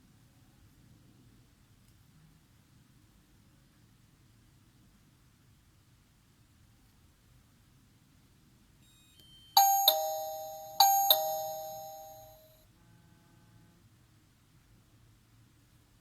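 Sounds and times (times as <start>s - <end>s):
two-tone doorbell chime: 9.0s - 12.5s.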